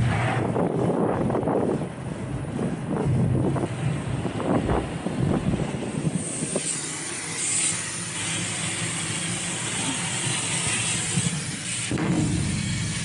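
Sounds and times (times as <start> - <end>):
water spraying on metal coil: 6.0 - 13.0.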